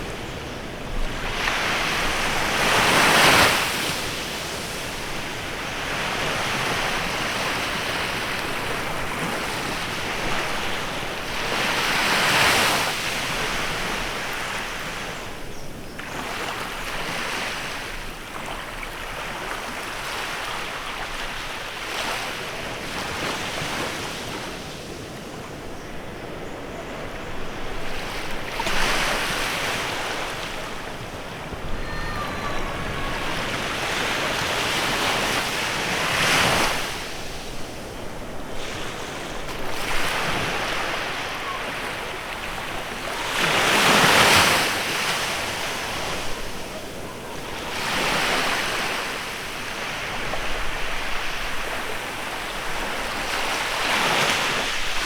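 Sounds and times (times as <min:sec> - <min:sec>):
waves breaking on a beach: 0:00.0 - 0:55.0.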